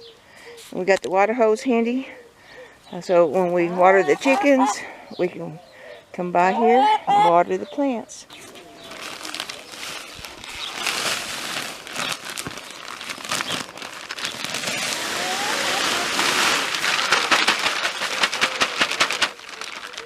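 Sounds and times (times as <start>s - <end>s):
plastic bag crinkling: 8.5s - 20.0s.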